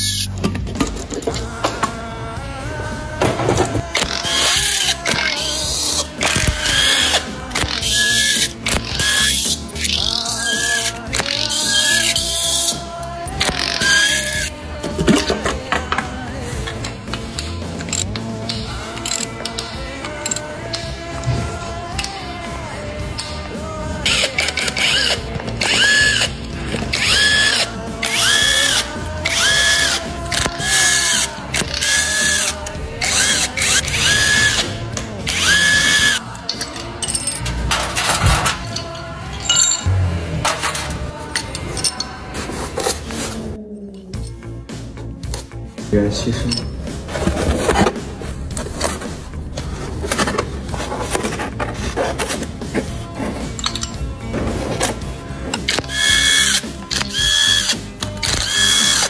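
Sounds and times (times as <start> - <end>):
cordless power driver whining: 24.1 - 36.3, 55.7 - 59.0
metal tools clattering: 35.4 - 44.5, 46.3 - 57.2.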